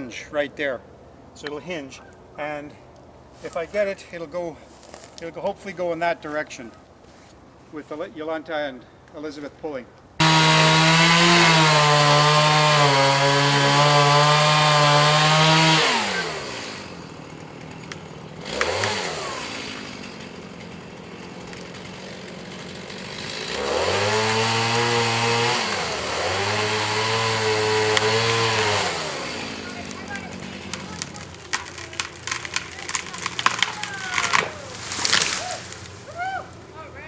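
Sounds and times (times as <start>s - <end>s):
chainsaw cutting wood: 10.2s - 36.1s.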